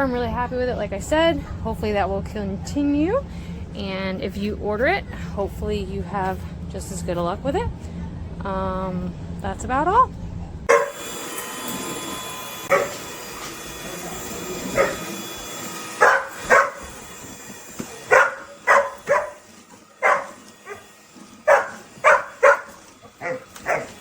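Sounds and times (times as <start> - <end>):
dog barking: 10.7 - 11.0, 12.7 - 13.0, 14.7 - 15.1, 16.0 - 16.9, 18.1 - 20.9, 21.5 - 24.0.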